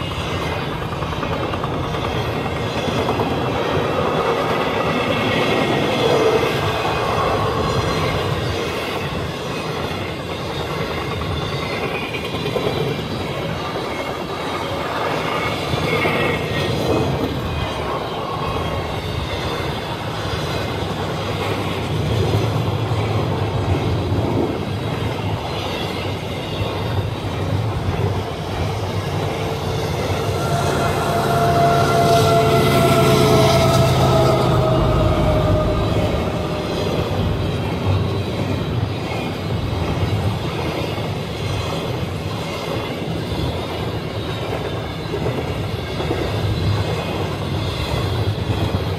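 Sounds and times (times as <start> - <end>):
train cars rumbling on rails: 0.0 - 48.9
steady droning tone: 29.4 - 39.0.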